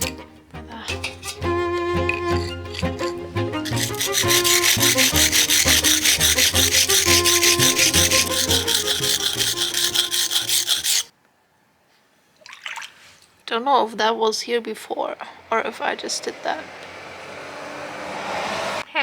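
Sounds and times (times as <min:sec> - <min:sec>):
abrasive rubbing: 0:00.0 - 0:11.1
background string music: 0:00.0 - 0:11.1.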